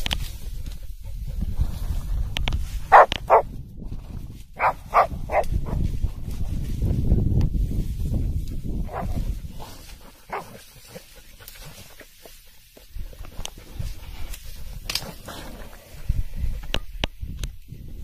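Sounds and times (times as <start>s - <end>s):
low wind: 0.0s - 18.0s
dog barking: 2.9s - 3.5s, 4.6s - 5.8s, 8.9s - 9.2s, 10.3s - 10.6s.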